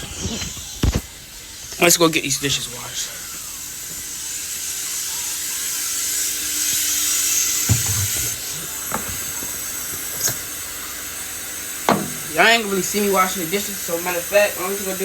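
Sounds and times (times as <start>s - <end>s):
tap running into sink: 7.5s - 10.5s, 11.8s - 12.6s
dishes knocking: 7.6s - 9.6s, 11.9s - 12.3s.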